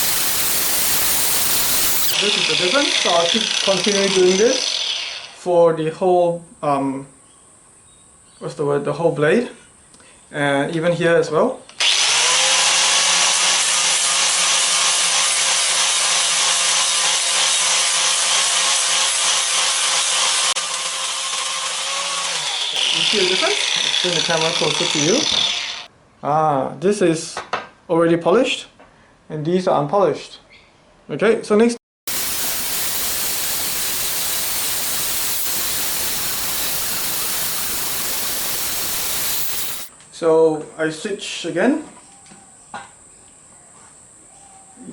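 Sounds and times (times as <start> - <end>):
grinder motor hum: 0.0 - 5.4, 19.4 - 25.9, 32.1 - 39.9
grinder polishing steel blade: 0.0 - 5.4, 16.9 - 25.9, 32.1 - 39.9.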